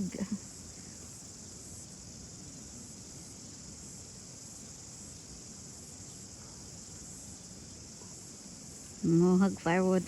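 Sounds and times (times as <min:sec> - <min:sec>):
high-pitched insect chorus: 0:00.0 - 0:10.0.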